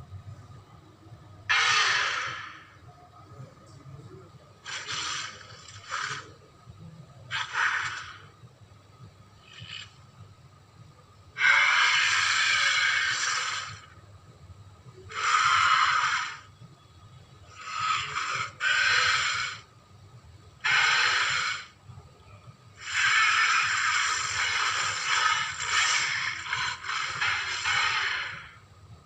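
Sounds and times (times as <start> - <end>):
harsh breathy hissing creature calls: 1.5 - 2.8, 4.6 - 6.3, 7.3 - 8.2, 9.4 - 9.9, 11.4 - 13.9, 15.1 - 16.5, 17.5 - 19.7, 20.6 - 21.8, 22.8 - 28.6.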